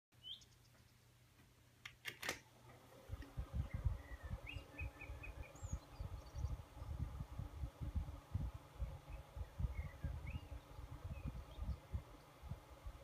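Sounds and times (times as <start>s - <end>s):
faint bird chirps: 0.2s - 1.1s, 3.6s - 7.0s, 9.0s - 12.4s
fan switch clicks: 1.8s - 3.4s
small fan motor humming: 2.1s - 13.0s
gusty low rumbling: 3.1s - 13.0s.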